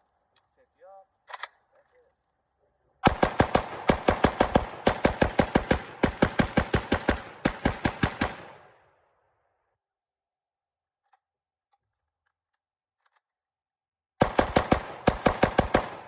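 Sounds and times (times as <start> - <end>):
rifle fired rapidly: 3.0 - 8.8, 14.2 - 16.0.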